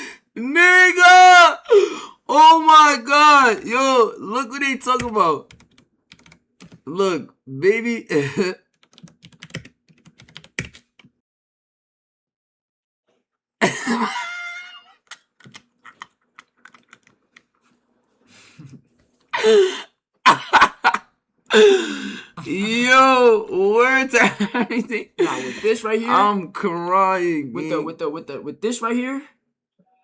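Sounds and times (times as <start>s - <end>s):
computer keyboard clicks: 5.0s - 6.8s, 8.8s - 11.1s, 15.0s - 17.5s
person clearing throat: 13.6s - 14.4s.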